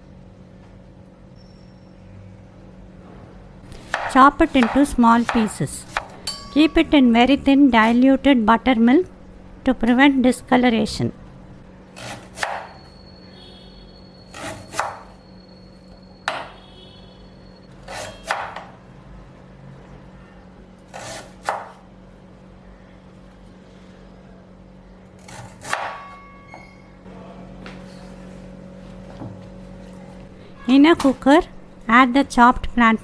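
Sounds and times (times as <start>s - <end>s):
knife chopping on board: 3.7s - 6.2s, 12.0s - 12.7s, 14.4s - 15.0s, 16.3s - 16.6s, 17.9s - 18.7s, 20.9s - 21.8s, 25.2s - 26.0s.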